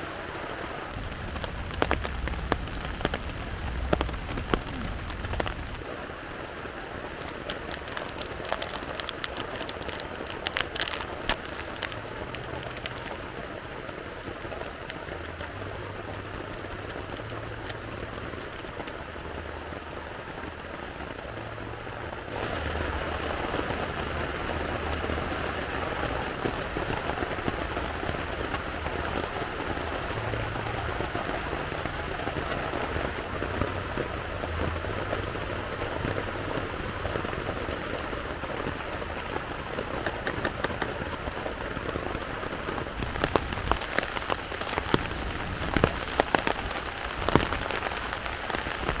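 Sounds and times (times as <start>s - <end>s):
steady rain falling: 0.0s - 49.0s.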